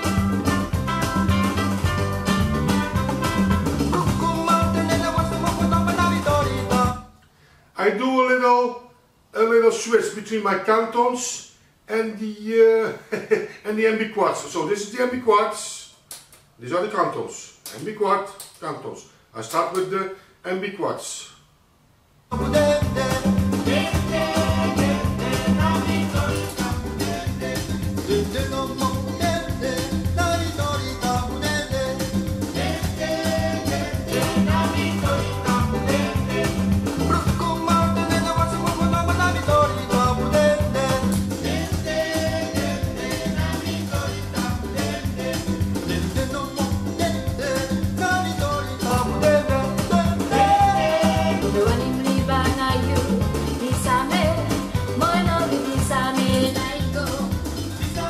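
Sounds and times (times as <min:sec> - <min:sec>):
song over loudspeakers: 0:00.0 - 0:07.1, 0:22.3 - 0:58.0.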